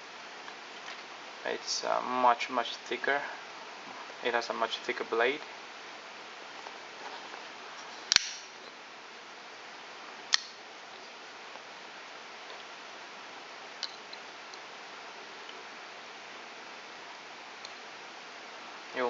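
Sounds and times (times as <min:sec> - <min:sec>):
steady hiss: 0:00.0 - 0:19.0
folding knife clicks: 0:08.1 - 0:08.5, 0:10.3 - 0:10.6.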